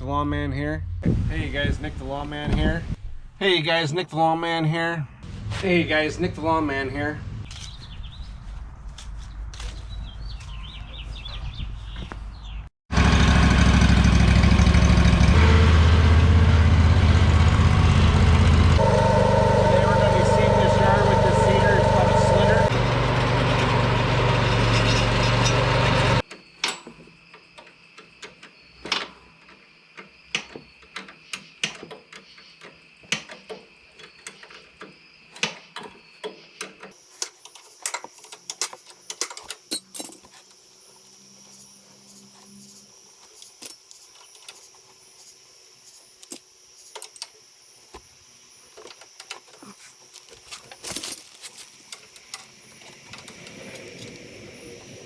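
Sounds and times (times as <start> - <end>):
lawn mower engine running: 12.9 - 26.2, 49.8 - 55.0.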